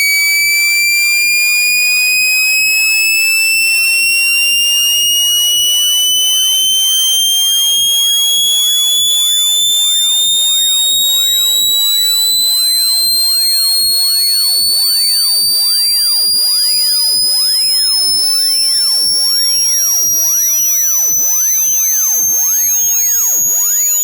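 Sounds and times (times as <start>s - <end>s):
shrill buzzy synthesized tone: 0.0s - 24.0s.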